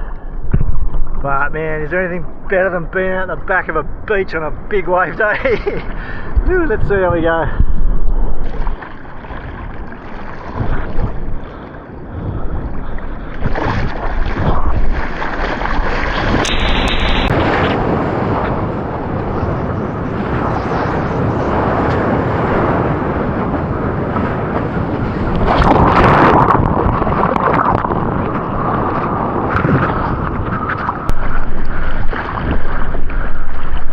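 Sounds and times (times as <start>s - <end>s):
wind buffeting microphone: 0.0s - 33.9s
water splashing: 8.0s - 19.4s, 24.2s - 33.9s
ocean surf rushing: 8.5s - 33.9s.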